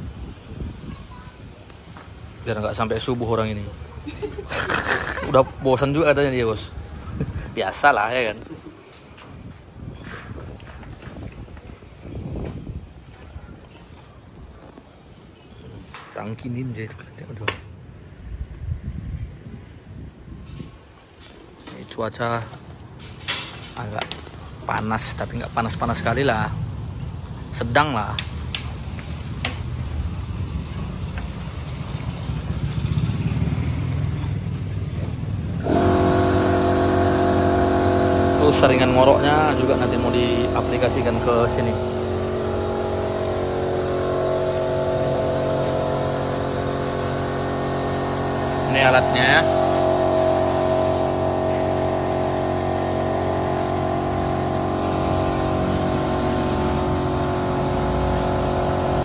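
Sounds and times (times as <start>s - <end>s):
vehicle motor rumble: 28.9s - 59.0s
steady held tones: 35.6s - 59.0s.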